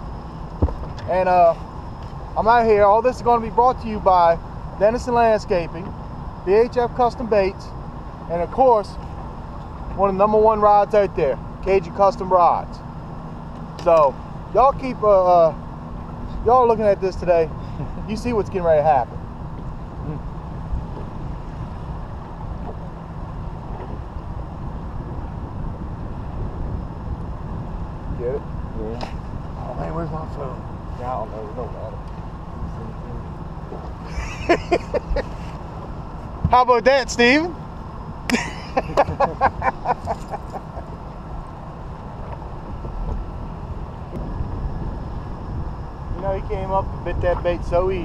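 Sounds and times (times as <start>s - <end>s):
wind buffeting microphone: 15.6s - 48.0s.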